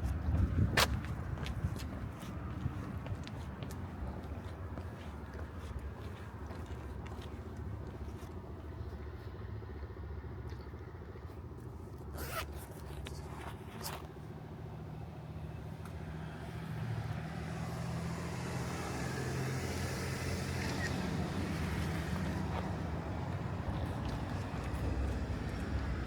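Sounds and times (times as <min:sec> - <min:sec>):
road traffic rumbling: 0:00.0 - 0:26.0
vehicle passing: 0:14.3 - 0:26.0.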